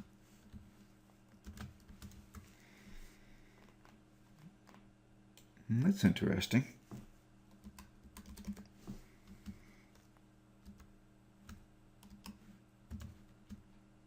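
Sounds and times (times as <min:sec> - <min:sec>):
low steady hum: 0:00.0 - 0:14.0
keyboard typing: 0:01.3 - 0:02.5, 0:07.5 - 0:10.0, 0:10.6 - 0:13.6.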